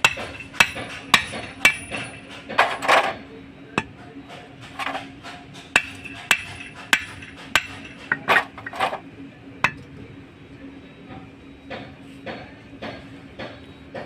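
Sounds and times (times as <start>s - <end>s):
dull metal clanks and knocks: 0.0s - 3.2s, 3.8s - 9.0s, 9.6s - 9.9s, 11.7s - 14.0s
hammer striking steel: 0.0s - 3.2s, 3.8s - 9.0s, 9.6s - 9.9s.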